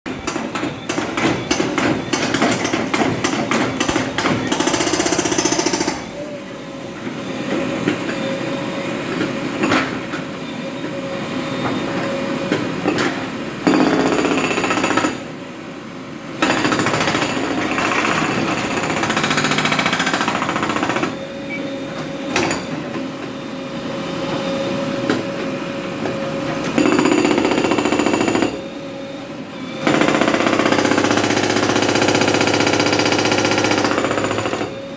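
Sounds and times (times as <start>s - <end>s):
backhoe loader hammering road: 0.1s - 6.1s
machine engine whine: 18.2s - 34.9s.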